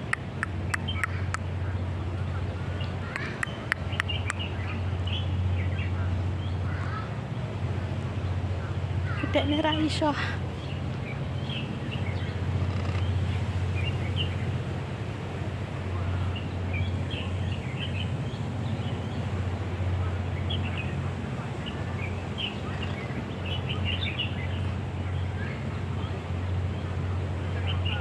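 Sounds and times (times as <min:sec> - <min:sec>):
steady low rumble: 0:07.4 - 0:28.0.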